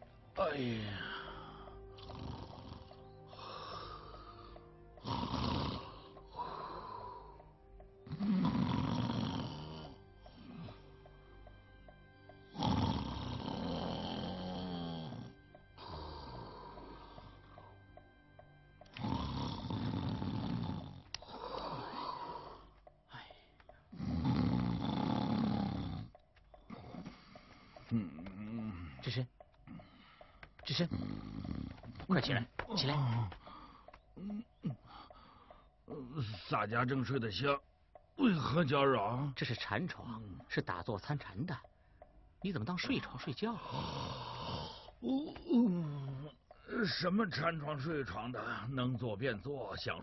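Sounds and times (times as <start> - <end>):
soft background music: 0.0 - 50.0
quiet breath: 0.8 - 4.8, 5.8 - 7.6, 14.5 - 17.8, 20.6 - 24.2, 25.2 - 29.0, 29.7 - 32.1, 33.3 - 35.9
man snoring heavily: 0.9 - 10.8, 12.5 - 17.4, 18.9 - 22.8, 23.9 - 29.0, 30.8 - 32.0, 43.5 - 46.8.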